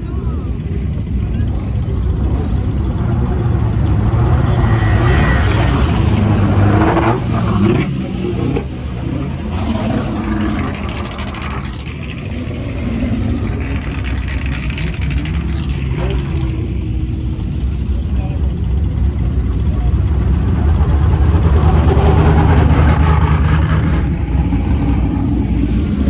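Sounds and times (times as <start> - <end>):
engine throttle blips: 0.0 - 26.0
racing car engines passing: 0.0 - 26.0.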